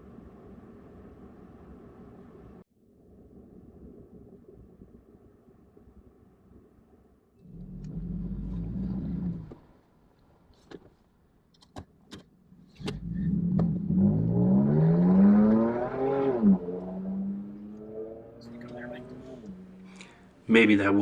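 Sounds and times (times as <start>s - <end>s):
vehicle engine revving: 7.5s - 9.6s, 12.8s - 21.0s.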